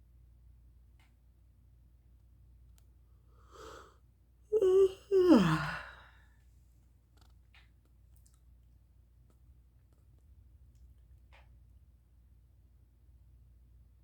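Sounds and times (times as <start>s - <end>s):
person yawning: 4.5s - 6.1s.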